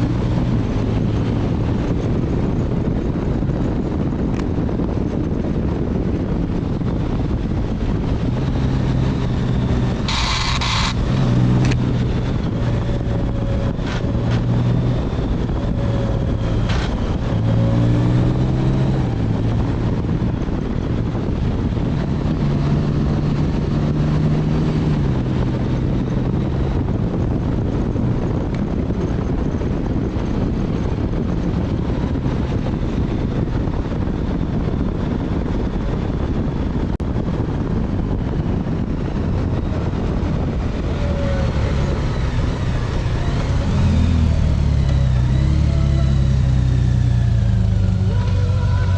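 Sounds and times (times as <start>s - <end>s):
motorcycle engine running: 0.0s - 48.9s
wind and road rush: 0.0s - 48.9s.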